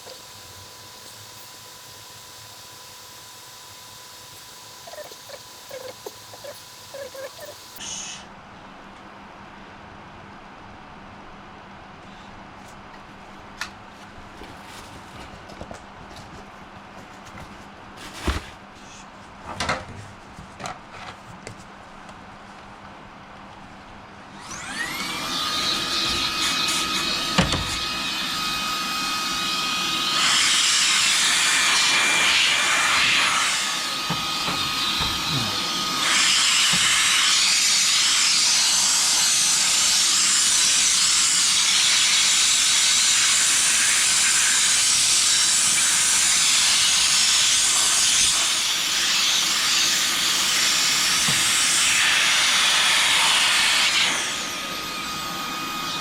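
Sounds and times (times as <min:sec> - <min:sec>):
power tool motor whine: 0:00.0 - 0:07.8, 0:24.4 - 0:56.0.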